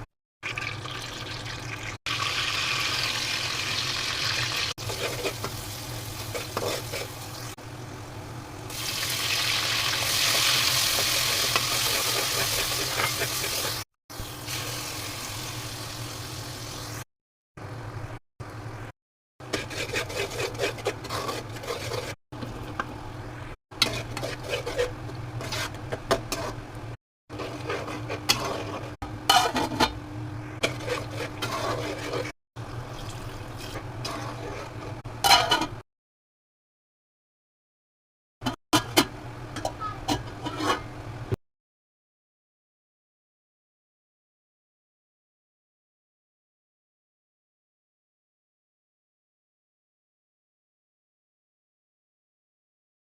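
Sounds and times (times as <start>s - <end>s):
food sizzling in a pan: 0.5s - 7.9s, 8.7s - 17.0s.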